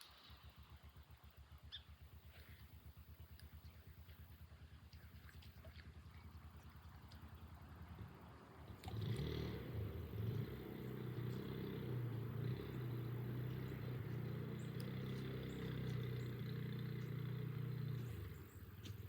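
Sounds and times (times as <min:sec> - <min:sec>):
engine running: 0:00.0 - 0:19.0.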